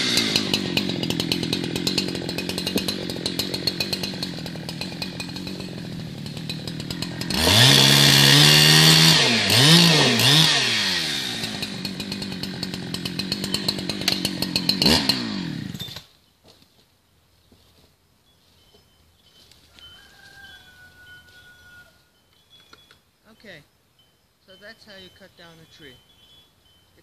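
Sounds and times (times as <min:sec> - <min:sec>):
chainsaw engine idling and revving: 0:00.0 - 0:16.1.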